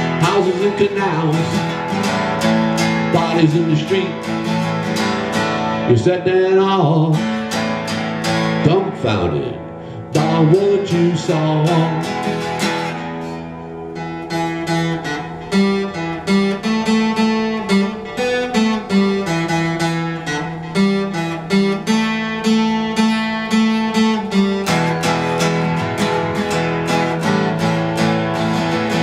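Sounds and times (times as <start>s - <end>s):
acoustic guitar picked notes: 0.0s - 29.0s.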